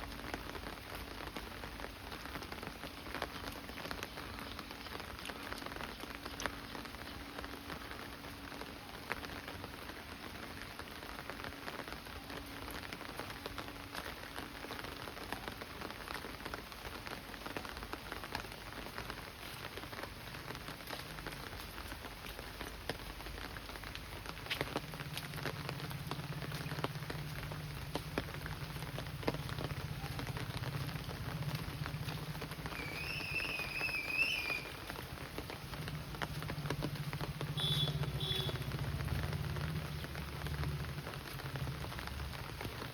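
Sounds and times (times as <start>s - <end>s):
raindrops ticking on surfaces: 0.0s - 42.9s
steady rain falling: 0.0s - 42.9s.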